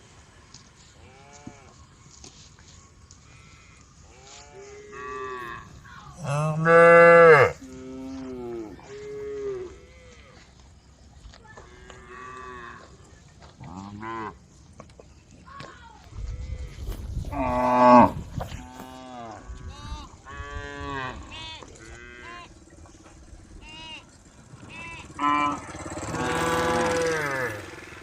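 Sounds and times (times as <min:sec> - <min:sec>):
cows mooing: 0:03.4 - 0:10.2, 0:13.6 - 0:14.4, 0:17.3 - 0:22.6, 0:24.5 - 0:28.0.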